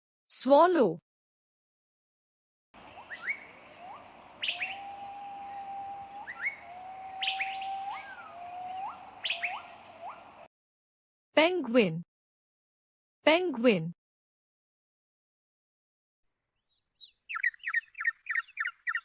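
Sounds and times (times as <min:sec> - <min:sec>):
swallow chirping and whistling: 0:02.8 - 0:10.5.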